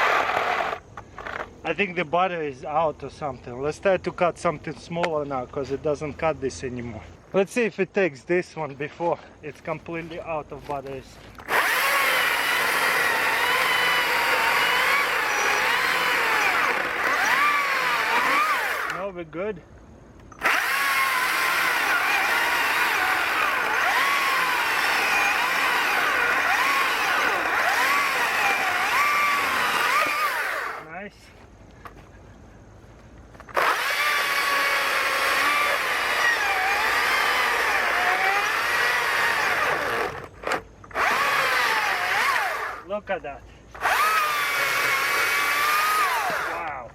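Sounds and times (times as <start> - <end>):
electric chainsaw cutting log: 0.0 - 1.5, 11.4 - 19.1, 20.4 - 30.9, 33.4 - 42.9, 43.8 - 46.8.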